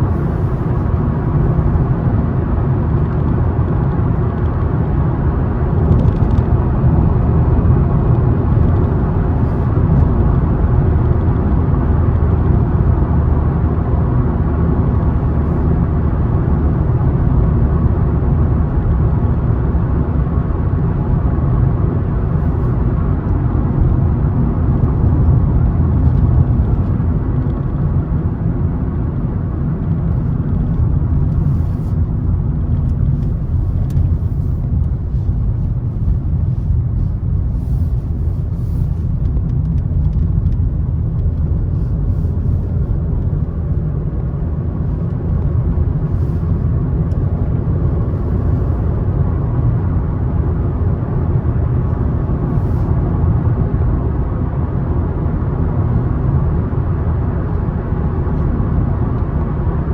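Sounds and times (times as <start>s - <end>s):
car road and engine rumble: 0.0s - 59.9s.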